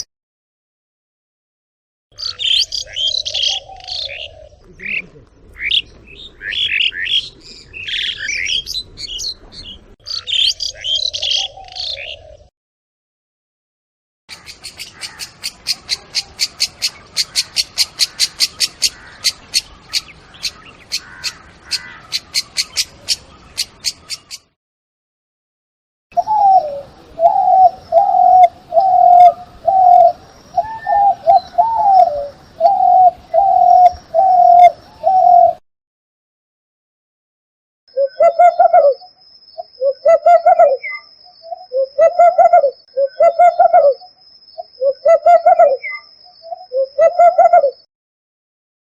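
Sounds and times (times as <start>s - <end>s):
high-pitched bird chirps: 2.1s - 12.2s, 14.3s - 24.5s, 37.9s - 47.9s
lower repeated bird notes: 2.1s - 12.5s, 14.3s - 24.6s, 26.1s - 35.6s, 37.9s - 47.9s
short low bird calls: 2.1s - 12.5s, 14.3s - 24.5s, 26.1s - 35.6s.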